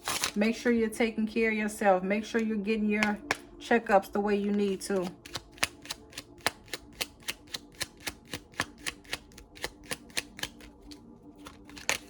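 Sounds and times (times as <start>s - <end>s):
cards being shuffled: 4.4s - 12.0s.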